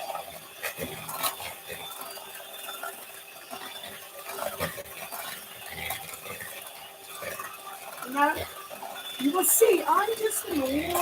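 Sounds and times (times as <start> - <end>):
hand beater clicking and scraping bowl: 2.8 - 11.0.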